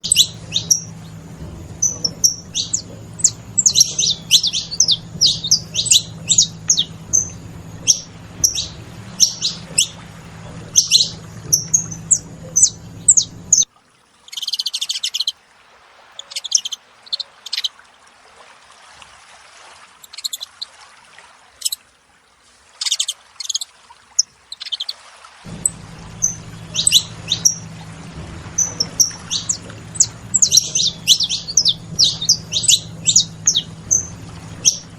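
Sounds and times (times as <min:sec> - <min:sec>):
finches chirping: 0:00.0 - 0:13.7, 0:25.5 - 0:34.9.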